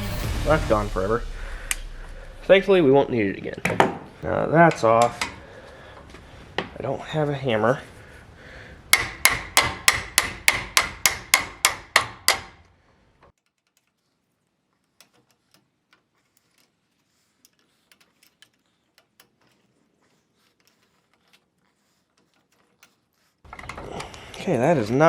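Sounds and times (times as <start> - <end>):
metal-on-metal hammer strikes: 8.9 - 12.6.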